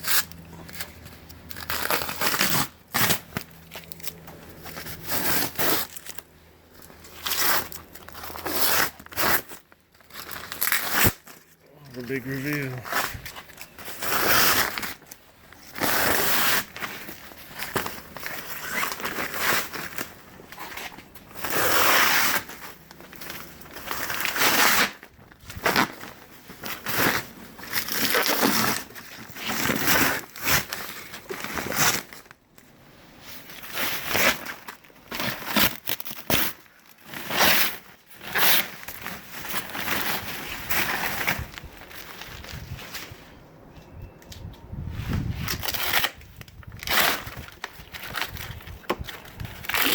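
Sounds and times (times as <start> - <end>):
peel ply ripping off laminate: 0.0 - 4.2, 10.3 - 11.4, 12.9 - 22.7, 24.0 - 26.1, 26.8 - 32.2.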